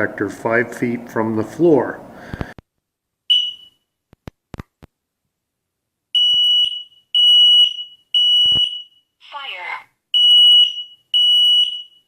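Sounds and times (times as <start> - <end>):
high-pitched alarm beeps: 3.3 - 3.8, 6.2 - 9.1, 10.2 - 12.0.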